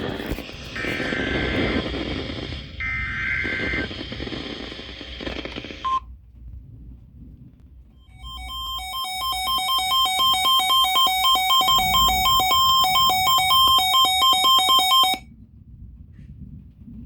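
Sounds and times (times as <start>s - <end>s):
electronic two-tone alarm beeping: 8.1s - 15.2s.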